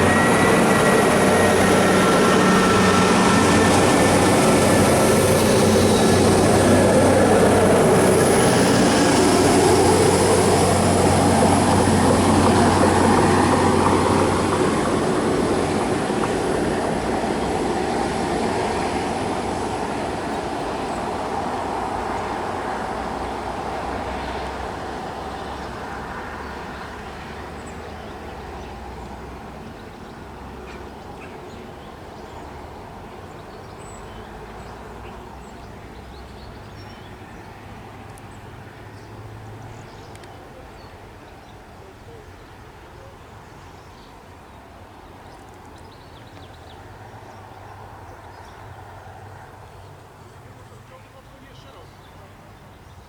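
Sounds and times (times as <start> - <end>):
birds chirping: 0.0 - 19.1
diesel train rumble: 0.0 - 43.4
distant engine hum: 0.0 - 53.0.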